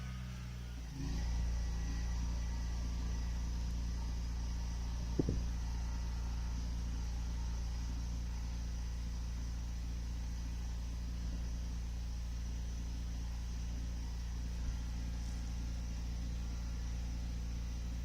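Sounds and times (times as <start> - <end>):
low mechanical hum: 0.0 - 18.0
short knock: 5.2 - 5.5.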